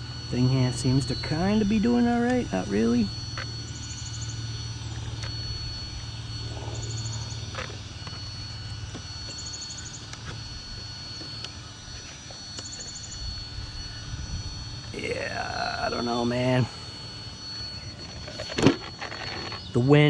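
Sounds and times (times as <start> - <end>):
faint high whine: 0.0 - 20.0
high chirping trill: 0.3 - 20.0
wind rumbling on microphone: 13.0 - 15.0.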